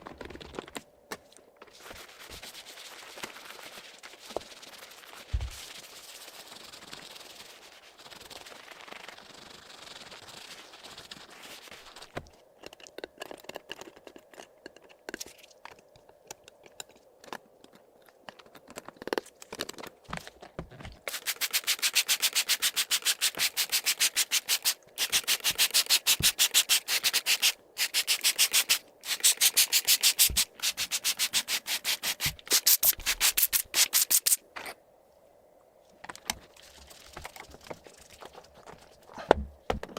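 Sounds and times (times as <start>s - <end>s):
rubbing on keyboard: 1.6s - 12.3s, 21.1s - 34.4s, 36.4s - 39.2s
small clicks and scrapes: 10.0s - 21.1s, 35.9s - 39.4s.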